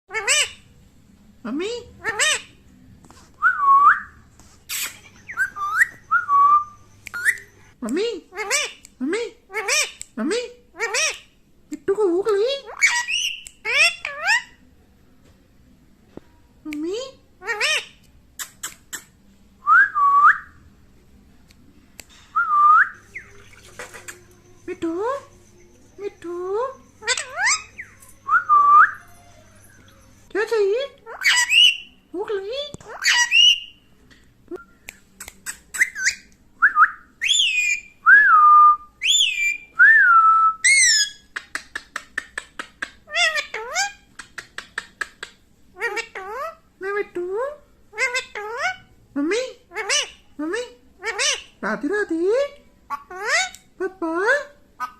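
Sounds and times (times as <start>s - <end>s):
parrot whistling: 4.7s - 7.5s, 35.7s - 41.2s
parrot clicks and chirps: 7.0s - 7.5s, 34.8s - 36.4s.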